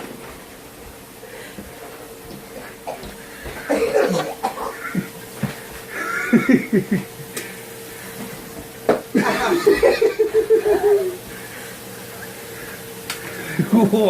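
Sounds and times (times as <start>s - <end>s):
man laughing: 5.9s - 7.4s, 9.1s - 11.2s, 13.4s - 14.0s.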